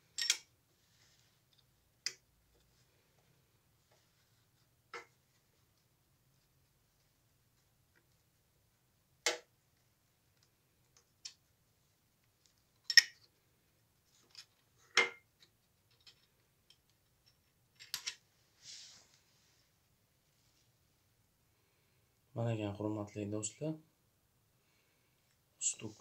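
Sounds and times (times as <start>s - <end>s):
metal tools clinking: 0.1s - 0.5s.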